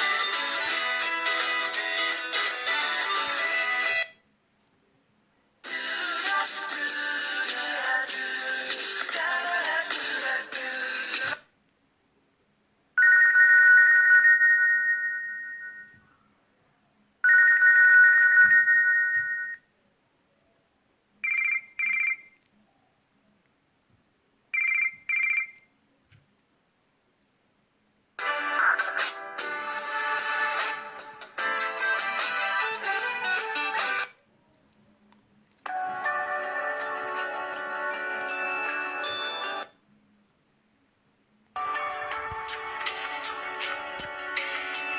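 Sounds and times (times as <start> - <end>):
trilling phone ringtone: 13.0 - 16.0, 17.2 - 19.7, 21.2 - 22.4, 24.6 - 25.6, 35.7 - 39.8, 41.6 - 44.9.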